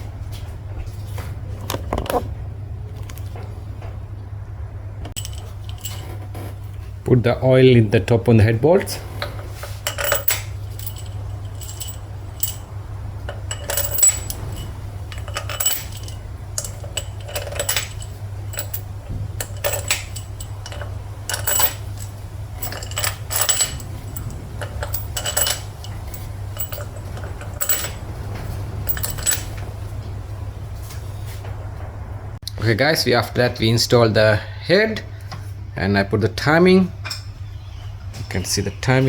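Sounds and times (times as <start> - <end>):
low hum: 3.7 - 7.1, 8.8 - 32.4
metal tools clinking: 5.1 - 6.8, 9.2 - 29.8.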